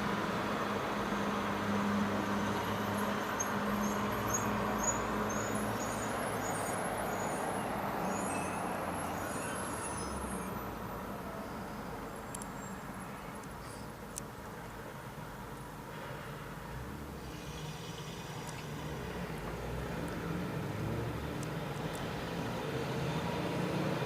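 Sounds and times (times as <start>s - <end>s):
vehicle engine hum: 0.0s - 24.0s
tyre hiss on wet road: 13.6s - 14.0s.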